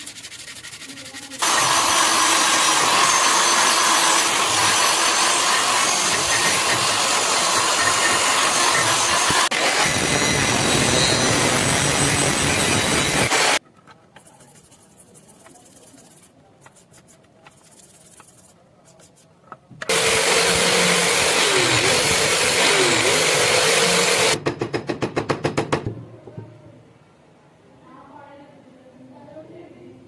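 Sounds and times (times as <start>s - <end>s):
power tool grinding knife blade: 1.4s - 13.6s, 19.9s - 24.4s.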